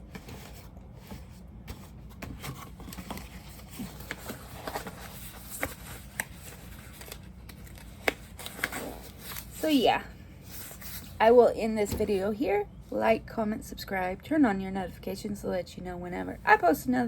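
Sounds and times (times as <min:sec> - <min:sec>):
low steady hum: 0:00.0 - 0:17.0
soft rustles: 0:00.1 - 0:12.3.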